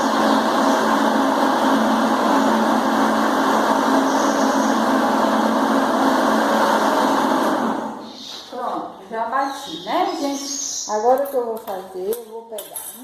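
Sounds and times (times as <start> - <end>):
blender running: 0.0 - 8.1.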